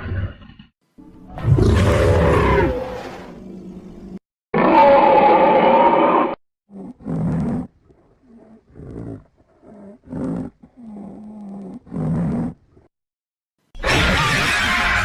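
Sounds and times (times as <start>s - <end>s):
dinosaur roar: 1.4s - 3.6s, 4.6s - 12.6s
low growl: 5.6s - 12.9s.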